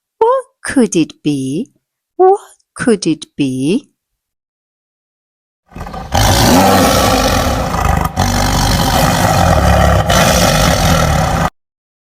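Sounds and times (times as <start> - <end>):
tiger roaring: 5.7 - 11.5.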